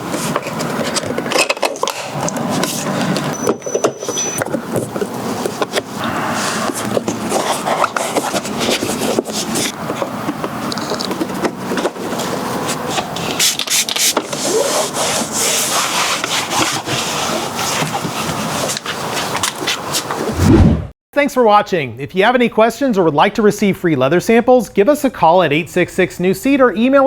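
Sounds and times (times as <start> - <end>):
hands handling parts: 6.6 - 15.4.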